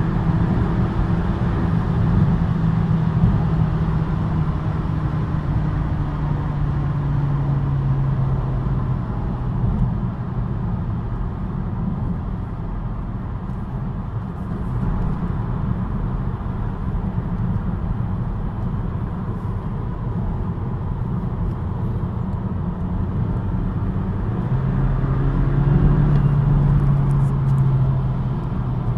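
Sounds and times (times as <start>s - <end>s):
car engine low hum: 0.0s - 28.9s.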